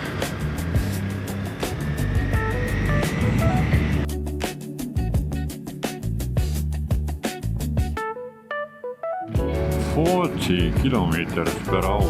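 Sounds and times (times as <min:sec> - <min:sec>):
drum and bass beat: 0:00.7 - 0:08.0, 0:09.4 - 0:12.0
keyboard notes: 0:01.6 - 0:05.8, 0:08.0 - 0:12.0.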